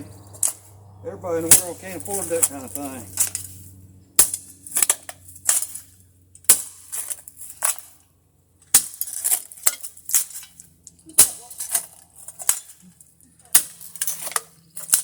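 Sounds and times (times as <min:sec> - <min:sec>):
metal digging tool crunching dirt: 0:00.0 - 0:15.0.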